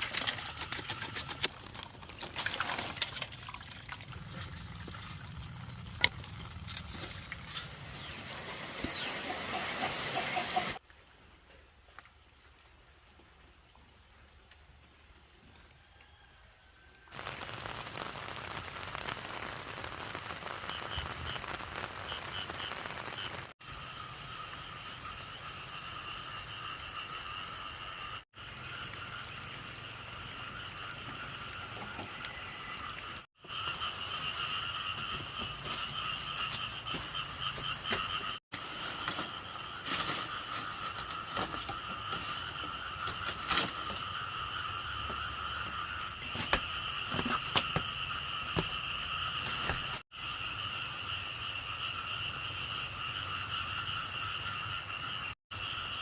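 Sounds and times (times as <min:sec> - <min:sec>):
frogs croaking: 0:20.1 - 0:56.0.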